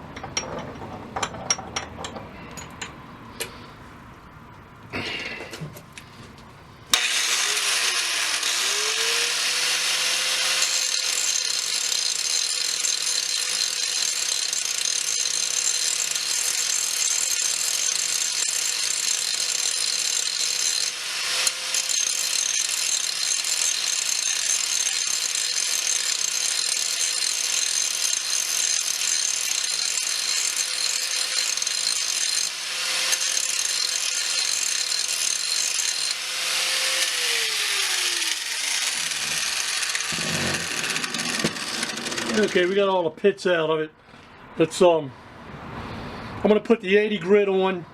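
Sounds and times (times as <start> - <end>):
angle grinder grinding steel: 6.9 - 42.8.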